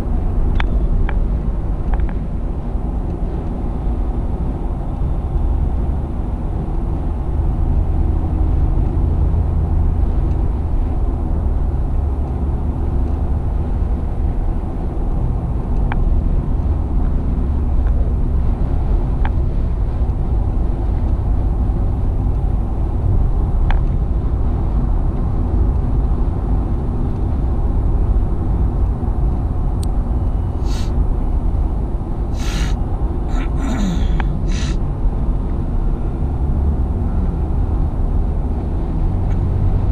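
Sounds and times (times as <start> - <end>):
car interior road rumble: 0.0 - 39.9
short sharp noises: 32.4 - 34.8.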